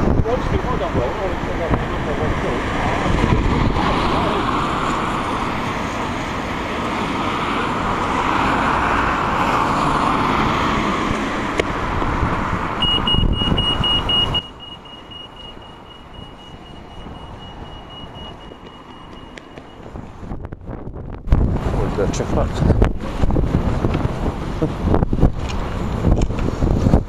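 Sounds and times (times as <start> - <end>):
road traffic noise: 0.0 - 27.0
high electronic beep: 12.8 - 19.9.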